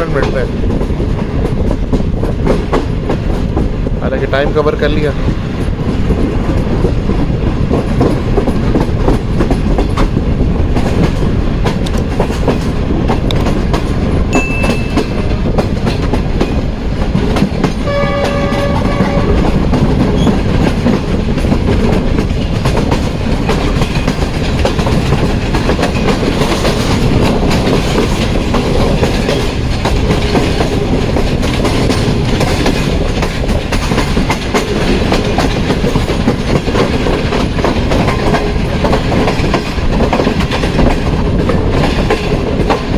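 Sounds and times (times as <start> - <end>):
train wheels rumbling on rails: 0.0 - 42.9
train horn blast: 17.8 - 19.5.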